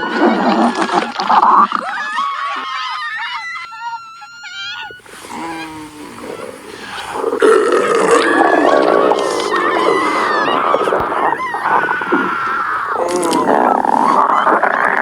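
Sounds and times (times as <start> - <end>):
rough growl: 5.0 - 15.0.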